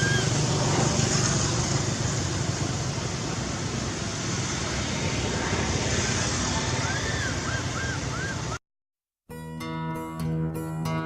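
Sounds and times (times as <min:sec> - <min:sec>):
road traffic rumble: 0:00.0 - 0:08.6
short rising and falling calls: 0:06.8 - 0:08.6.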